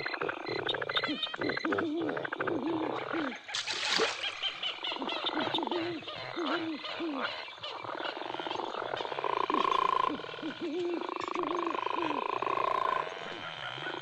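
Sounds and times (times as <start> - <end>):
frog croaking: 0.0 - 14.0.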